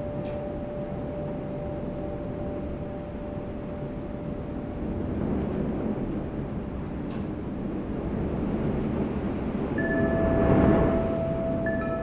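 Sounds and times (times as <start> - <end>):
wind rumbling: 0.0 - 12.0
wind chime note: 9.8 - 12.0.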